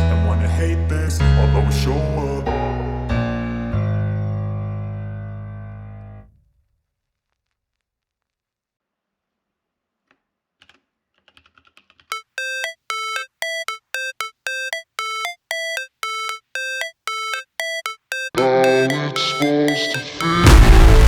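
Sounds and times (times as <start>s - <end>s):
high electronic beeping: 12.1s - 21.0s.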